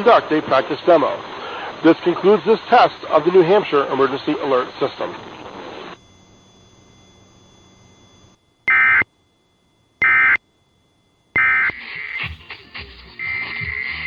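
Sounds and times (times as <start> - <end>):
faint radio hiss: 0.0 - 8.3, 11.7 - 14.0
digital data tone bursts: 11.4 - 14.0.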